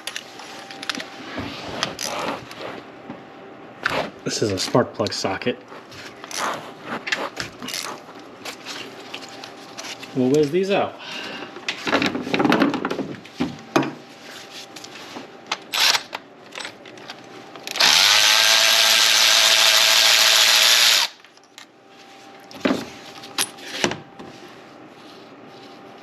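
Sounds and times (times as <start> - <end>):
cordless power tool whining: 17.7 - 21.2.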